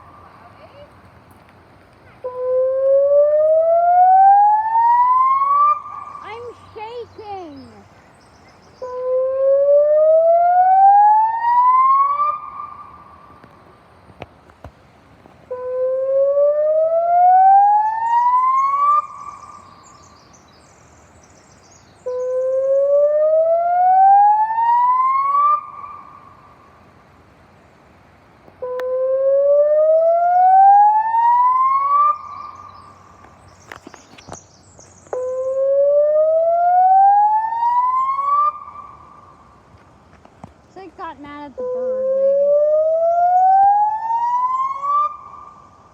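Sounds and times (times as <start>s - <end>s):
warning siren rising whoops: 2.3s - 6.2s, 8.9s - 12.8s, 15.6s - 19.4s, 22.4s - 26.0s, 28.7s - 32.5s, 35.4s - 38.9s, 41.7s - 45.3s.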